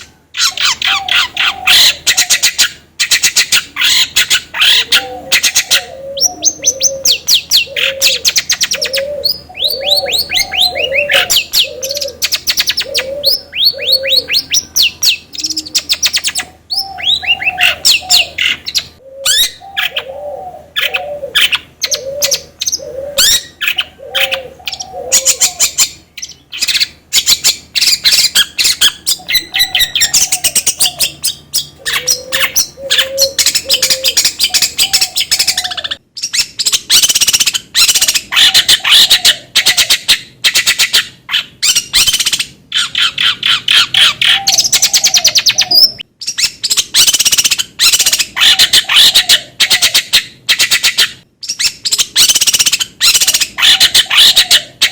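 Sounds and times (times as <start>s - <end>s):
shrike singing chirps and chatter: 0.0s - 41.0s.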